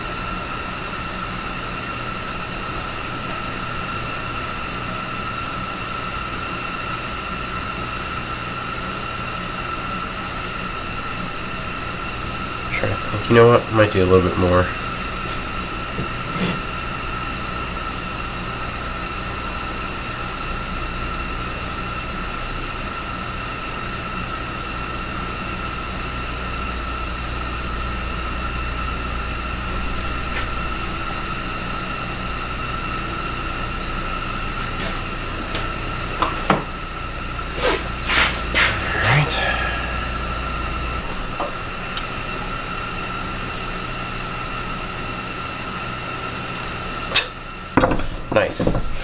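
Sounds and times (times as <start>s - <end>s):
high whine: 27.0s - 43.7s
machine hiss: 29.8s - 43.9s
low hum: 36.8s - 43.1s.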